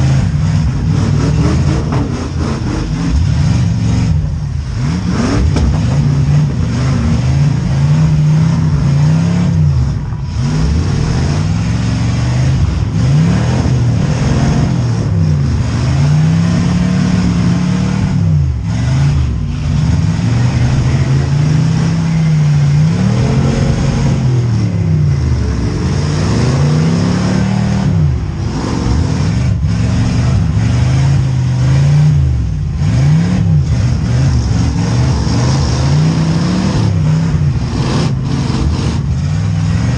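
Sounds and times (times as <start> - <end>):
car engines revving hard: 0.0 - 39.9.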